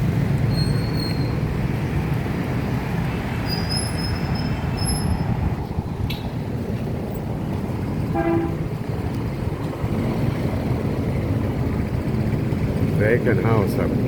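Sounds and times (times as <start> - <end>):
street traffic rumbling: 0.0 - 14.0
vehicle horn toot: 8.1 - 8.8.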